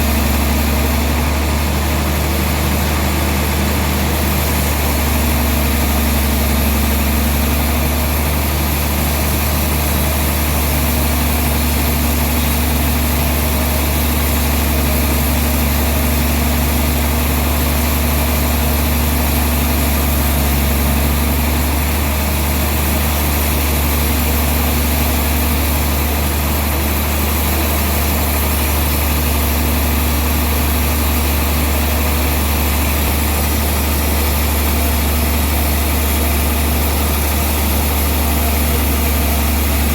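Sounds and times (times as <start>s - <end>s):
sawmill machinery engine hum: 0.0s - 39.9s.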